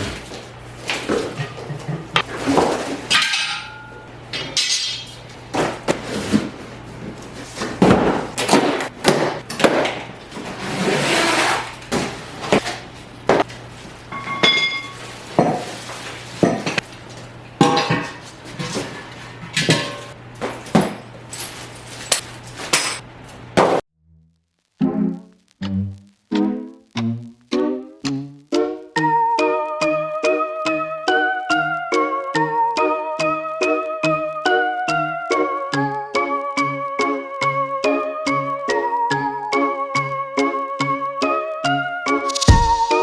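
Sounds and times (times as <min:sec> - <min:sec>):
ringing metallic clang: 0:03.1 - 0:05.2
steel parts clanking: 0:03.1 - 0:05.3.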